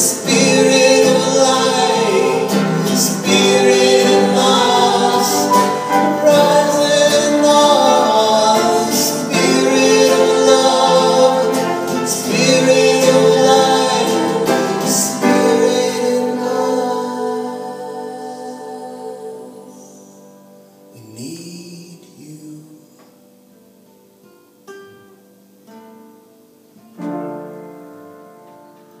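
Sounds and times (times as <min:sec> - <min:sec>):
voices singing in harmony: 0:00.0 - 0:20.6.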